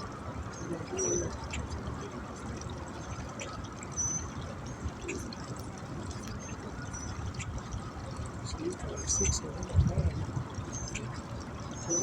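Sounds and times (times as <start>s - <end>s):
water pouring and trickling: 0.0s - 12.0s.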